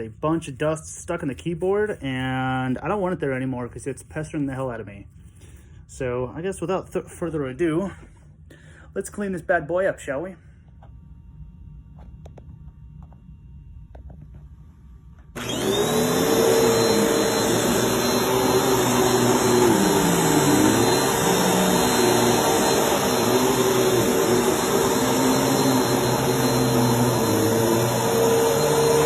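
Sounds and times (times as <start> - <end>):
vacuum cleaner motor whine: 10.8 - 29.0.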